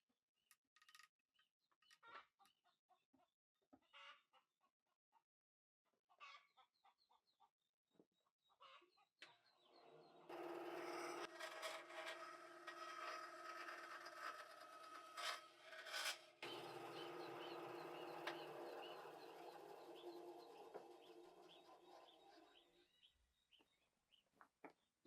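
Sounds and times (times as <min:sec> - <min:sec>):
scraping and rubbing: 0:10.3 - 0:22.6.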